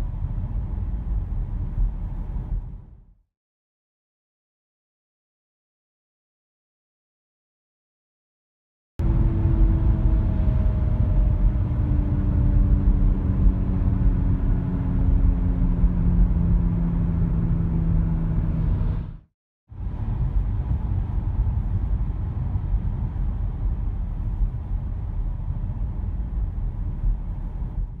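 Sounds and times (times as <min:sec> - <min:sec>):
road and tyre rumble: 0:00.0 - 0:03.0, 0:09.0 - 0:28.0
humming drone falling in pitch: 0:09.0 - 0:19.2.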